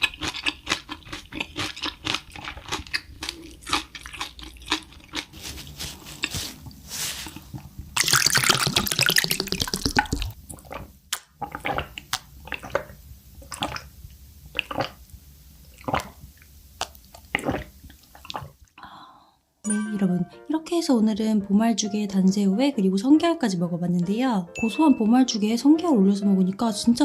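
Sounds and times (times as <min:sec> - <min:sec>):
person eating mouth sounds: 0:00.0 - 0:13.9, 0:14.5 - 0:15.0.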